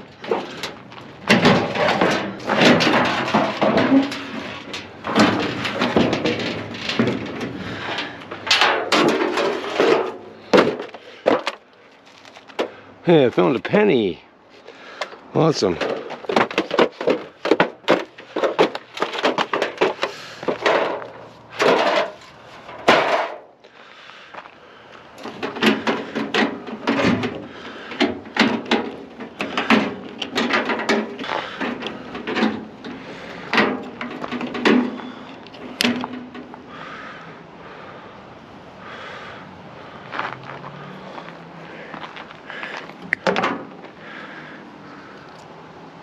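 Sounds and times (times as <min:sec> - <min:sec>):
metal parts clattering: 0:00.0 - 0:12.7, 0:15.6 - 0:23.5, 0:25.2 - 0:36.6.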